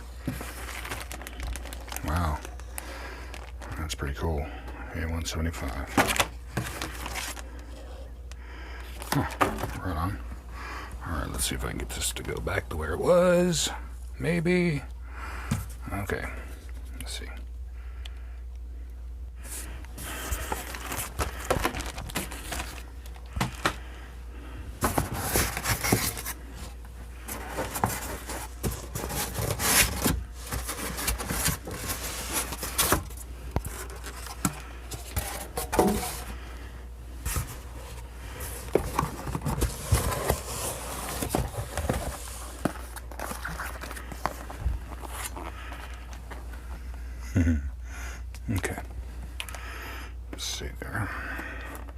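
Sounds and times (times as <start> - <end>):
packaging scraping and rustling: 0.0 - 3.8, 5.6 - 8.0, 19.5 - 23.8, 24.8 - 36.4, 37.2 - 46.5
steady low hum: 0.0 - 51.9.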